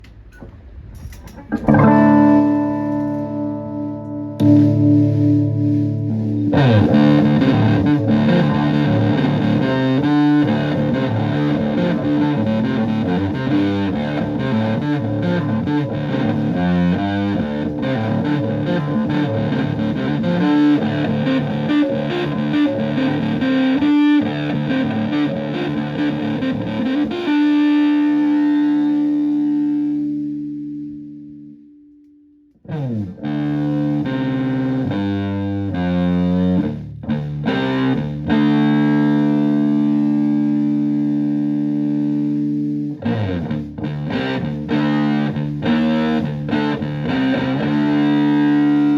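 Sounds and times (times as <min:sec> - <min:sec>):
distorted electric guitar riff: 0:00.0 - 0:48.9.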